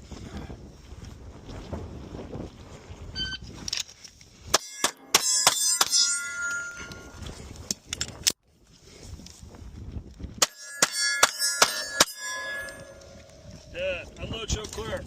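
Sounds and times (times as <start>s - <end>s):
metallic clang of steel targets: 4.5s - 7.2s, 10.4s - 13.8s.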